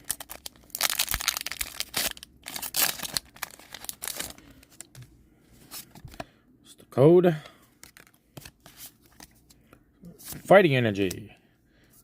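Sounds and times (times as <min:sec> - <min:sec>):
foil wrapper tearing and crinkling: 0:00.0 - 0:04.5.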